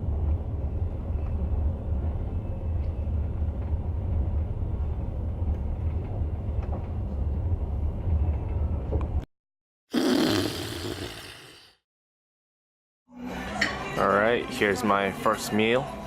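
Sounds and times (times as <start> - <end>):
passenger train rumble: 0.0 - 9.2.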